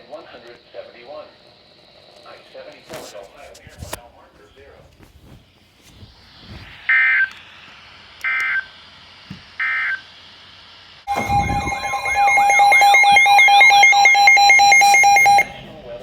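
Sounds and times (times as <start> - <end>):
screechy digital data tones: 11.1 - 15.6
alert tone with siren-like sweep: 11.1 - 15.7.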